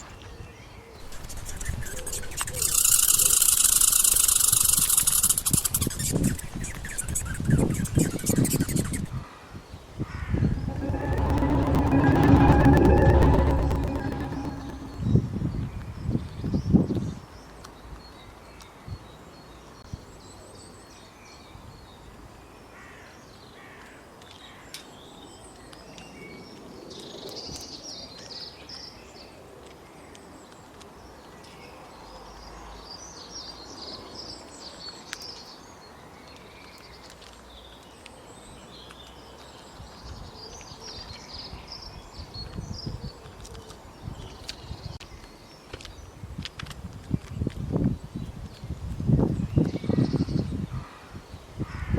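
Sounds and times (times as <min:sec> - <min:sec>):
steady outdoor background: 0:10.4 - 0:15.3.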